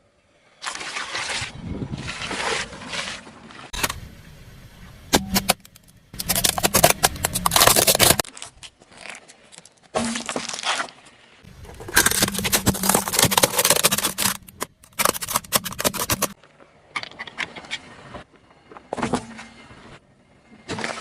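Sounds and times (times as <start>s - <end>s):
objects crushed under car tyre: 6.2s - 9.2s, 11.5s - 16.4s.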